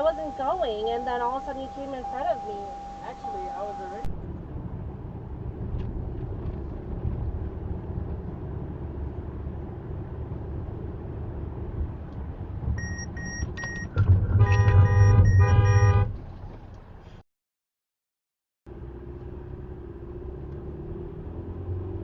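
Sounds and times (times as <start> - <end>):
car horn blasts: 0.0 - 4.1, 14.4 - 16.2
short high beeps: 0.0 - 4.1, 14.6 - 16.0
car road rumble: 0.0 - 17.2, 18.7 - 22.0.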